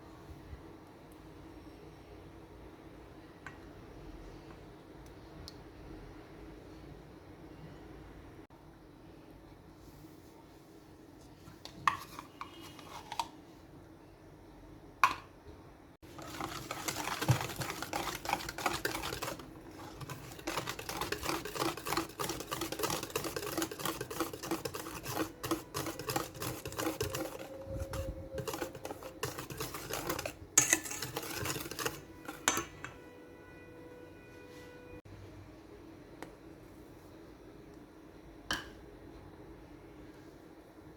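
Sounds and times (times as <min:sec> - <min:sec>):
faint steady hum: 0:00.0 - 0:40.9
utensil beating mixture in bowl: 0:11.5 - 0:13.3, 0:16.0 - 0:33.0.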